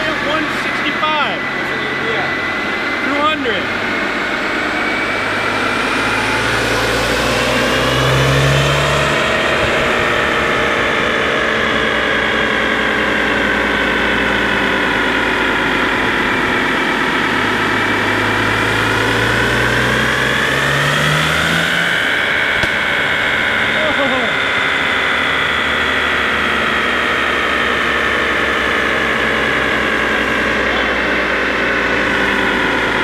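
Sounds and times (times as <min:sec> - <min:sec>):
car engine running on dyno: 0:00.0 - 0:33.0.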